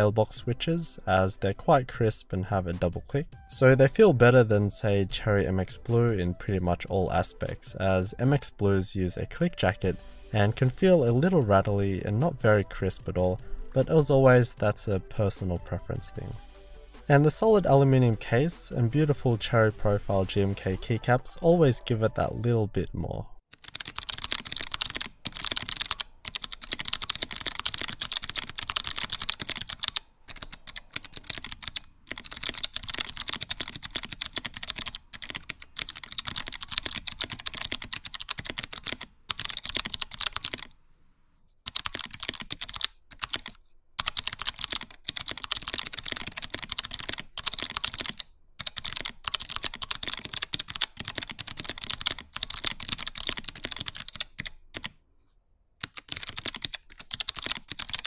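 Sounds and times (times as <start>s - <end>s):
mechanical keyboard clicky typing: 23.5s - 40.7s, 41.7s - 54.9s, 55.8s - 58.0s.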